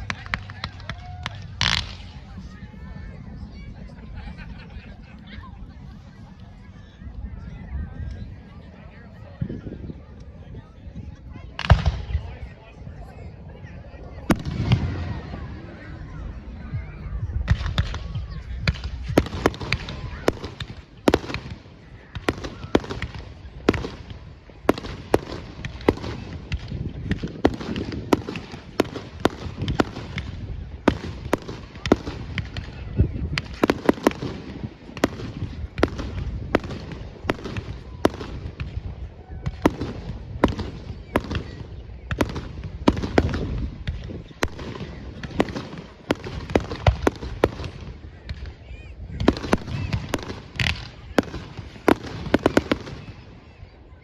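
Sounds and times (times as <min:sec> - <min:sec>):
fireworks bursting: 0:00.0 - 0:02.4, 0:17.4 - 0:53.6.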